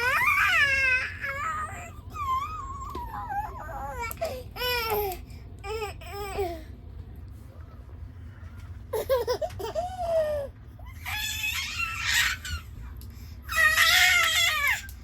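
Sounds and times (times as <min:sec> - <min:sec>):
baby giggling: 0:08.9 - 0:10.5.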